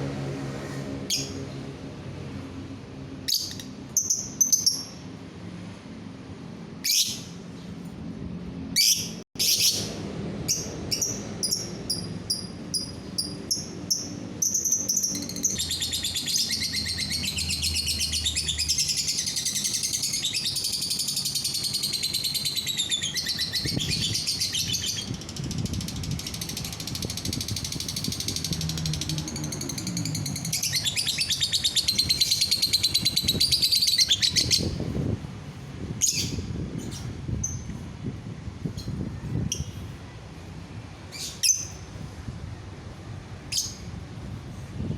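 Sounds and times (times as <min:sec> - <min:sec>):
lovebird chirping and chattering: 0:03.2 - 0:05.0, 0:06.8 - 0:07.3, 0:08.8 - 0:09.9, 0:10.5 - 0:34.8, 0:36.0 - 0:37.7, 0:41.1 - 0:41.9.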